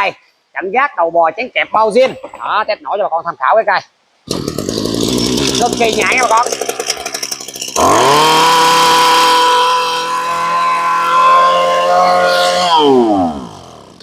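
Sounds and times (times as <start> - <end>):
brush cutter engine revving: 4.3 - 14.0.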